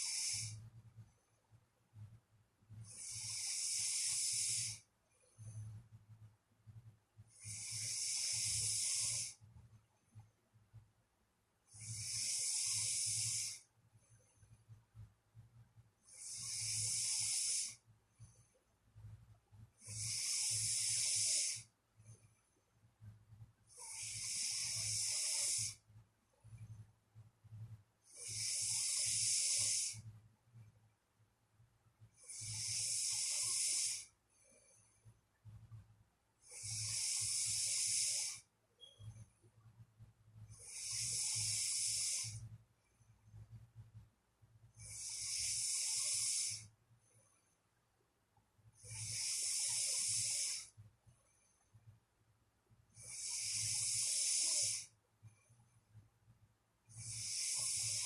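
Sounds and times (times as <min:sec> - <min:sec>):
person snoring: 0:00.0 - 0:00.6, 0:02.8 - 0:04.8, 0:07.3 - 0:09.4, 0:11.7 - 0:13.7, 0:16.1 - 0:17.8, 0:19.8 - 0:21.7, 0:23.7 - 0:25.8, 0:28.1 - 0:30.0, 0:32.2 - 0:34.1, 0:36.4 - 0:38.4, 0:40.5 - 0:42.4, 0:44.8 - 0:46.7, 0:48.8 - 0:50.7, 0:53.0 - 0:54.9, 0:56.9 - 0:58.0.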